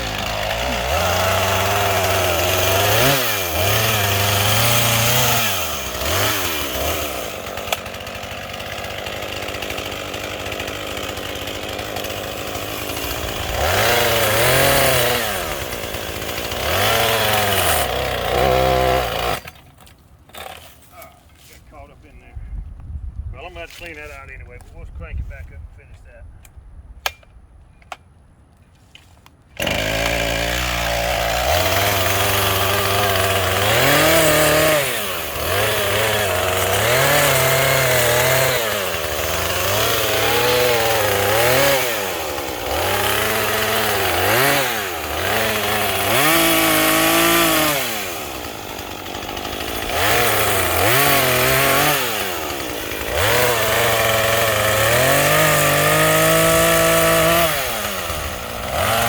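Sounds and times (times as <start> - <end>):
chainsaw revving: 0.0 - 21.1, 29.6 - 59.0.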